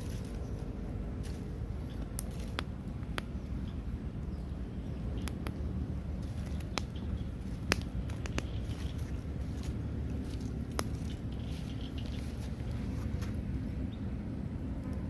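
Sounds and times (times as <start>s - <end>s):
steady low rumble: 0.0s - 15.0s
sharp pops from fire: 2.0s - 3.4s, 5.2s - 9.0s, 10.4s - 11.2s
cooking fire crackling: 2.0s - 13.5s.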